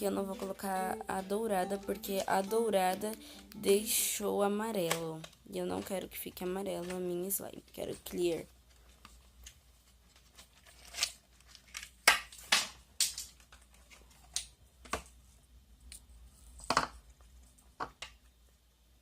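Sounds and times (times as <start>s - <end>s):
plastic packaging crinkling: 4.6s - 12.4s.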